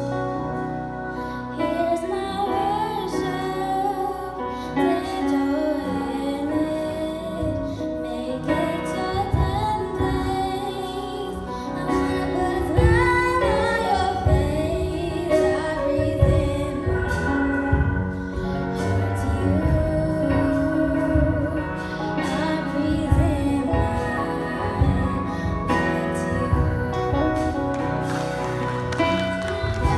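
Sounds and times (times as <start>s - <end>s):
guitar: 0.0s - 29.9s
woman singing: 0.0s - 29.9s
instrumental accompaniment with beat: 7.4s - 29.9s.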